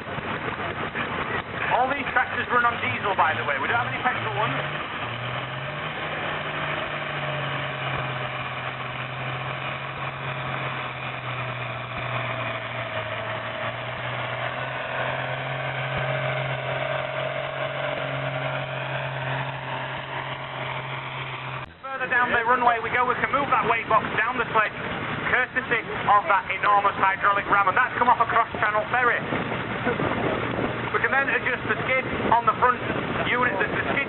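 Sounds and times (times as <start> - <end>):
tractor diesel engine running hard: 0.0 - 34.0.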